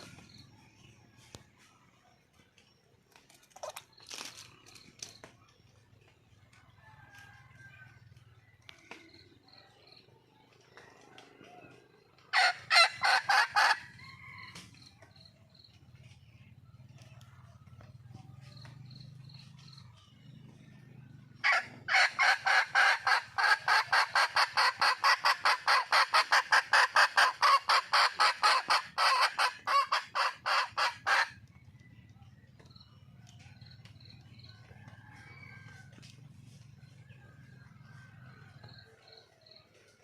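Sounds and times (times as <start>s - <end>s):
hen cackling calls: 12.3s - 14.0s, 21.4s - 31.4s.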